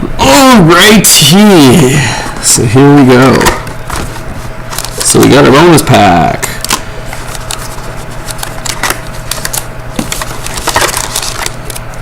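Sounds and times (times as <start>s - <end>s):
steady low hum: 0.0s - 12.0s
card packs crackling and scraping: 3.4s - 5.3s, 6.7s - 12.0s.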